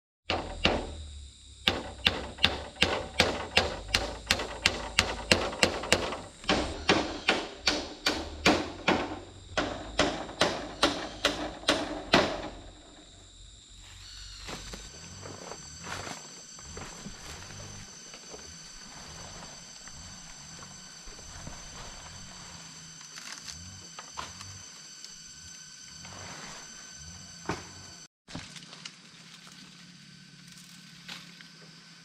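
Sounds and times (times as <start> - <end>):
hand tool striking rhythmically: 1.6 - 12.7.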